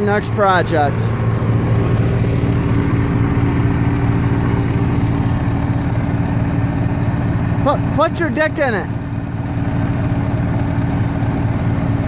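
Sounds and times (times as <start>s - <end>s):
tractor engine idling: 0.0s - 12.0s.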